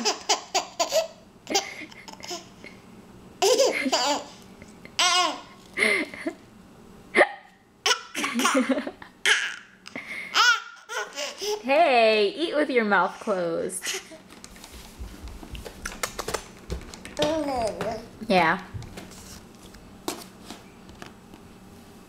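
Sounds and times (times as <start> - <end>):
baby laughing: 0.0 - 2.7, 3.4 - 6.2, 7.8 - 11.7.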